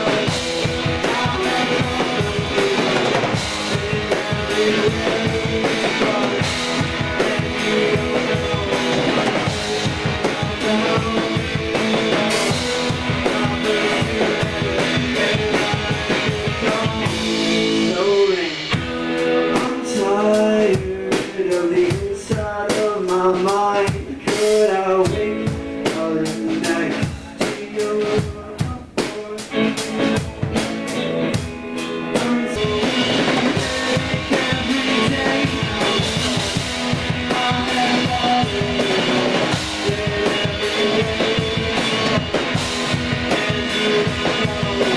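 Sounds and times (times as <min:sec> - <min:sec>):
drum kit beat: 0:00.0 - 0:44.9
rock band playing: 0:00.0 - 0:44.9
wavering lead guitar line: 0:00.0 - 0:44.9.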